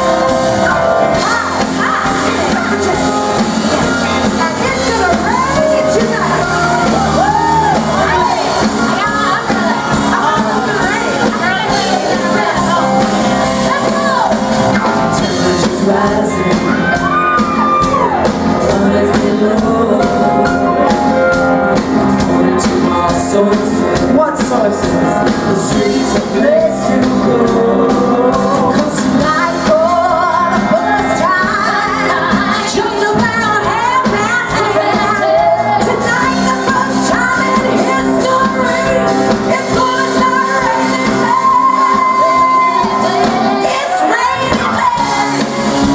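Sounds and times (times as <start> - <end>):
lead vocal singing: 0.0 - 45.9
live pop band playing: 0.0 - 45.9
shouts: 16.7 - 18.3.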